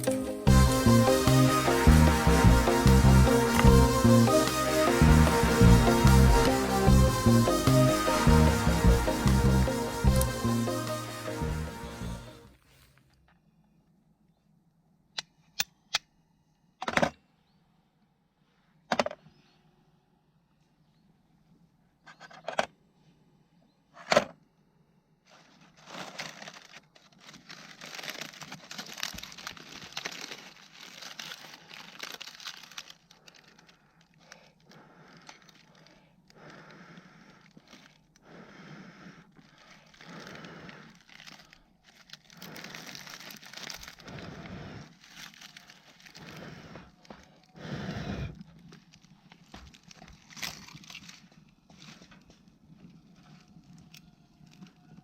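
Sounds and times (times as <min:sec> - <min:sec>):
rustling and crinkling: 0:25.2 - 0:38.2, 0:39.2 - 0:47.5, 0:48.3 - 0:55.0.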